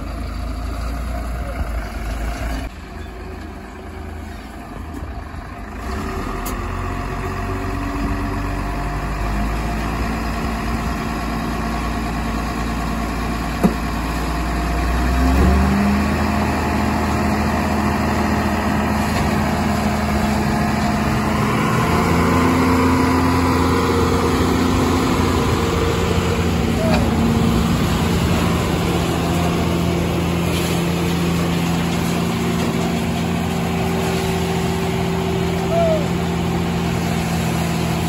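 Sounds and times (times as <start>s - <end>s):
heavy diesel engine revving: 3.8s - 38.0s.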